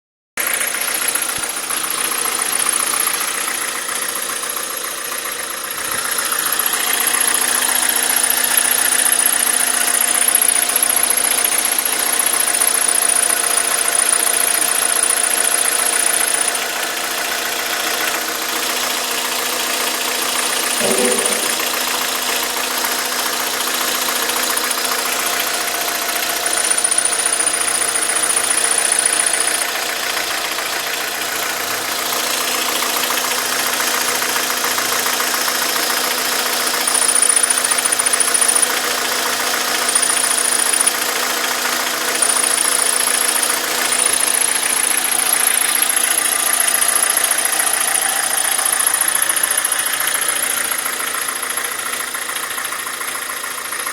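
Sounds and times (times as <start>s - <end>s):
car engine idling: 0.4s - 53.9s
high whistle of clutch bearing: 5.8s - 18.2s, 25.1s - 29.9s, 36.7s - 41.2s, 42.0s - 53.1s.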